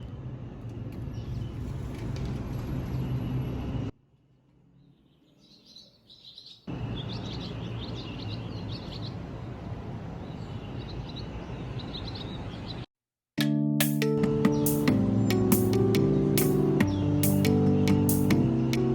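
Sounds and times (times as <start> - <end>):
outdoor background noise: 0.0 - 12.9
birds chirping: 4.8 - 12.9, 14.0 - 18.9.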